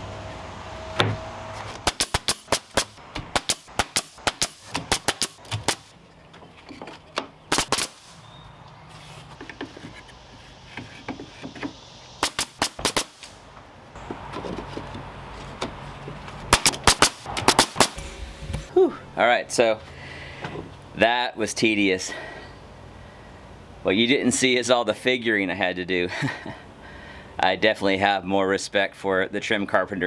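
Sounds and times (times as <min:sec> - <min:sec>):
hammering nails into wood: 0:01.8 - 0:05.9, 0:07.2 - 0:08.1, 0:10.8 - 0:13.3, 0:16.5 - 0:18.7.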